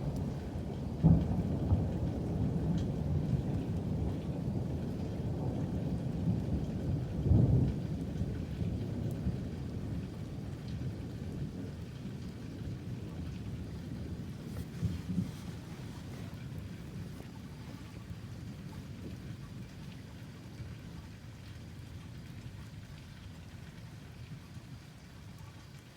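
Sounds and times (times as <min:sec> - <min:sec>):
thunder rumbling: 0:00.0 - 0:19.8.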